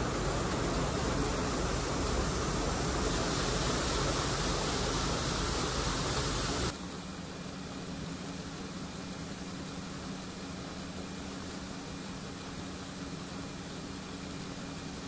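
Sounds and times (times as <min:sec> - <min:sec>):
low engine hum: 0:00.0 - 0:06.7
steady rushing noise: 0:00.0 - 0:06.8.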